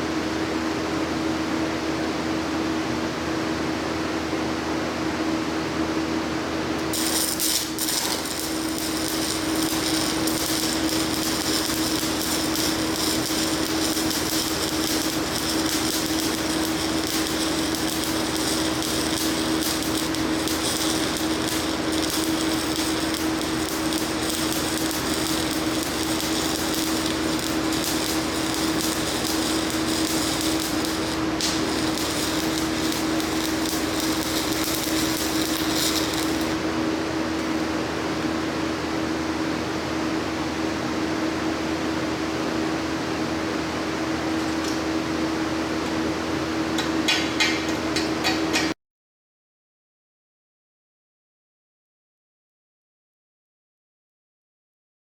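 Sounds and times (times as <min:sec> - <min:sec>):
welding arc crackling sizzle: 0:06.7 - 0:36.8
welding machine hum: 0:06.7 - 0:37.8.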